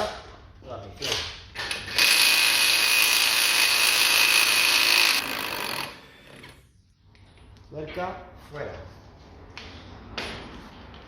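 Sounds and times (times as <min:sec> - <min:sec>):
pneumatic impact wrench: 0:01.6 - 0:06.6.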